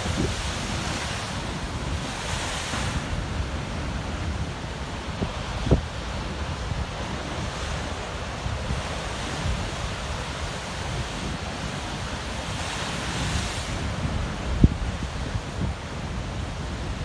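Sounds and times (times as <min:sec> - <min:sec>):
wind rumbling on microphone: 0:00.0 - 0:17.0.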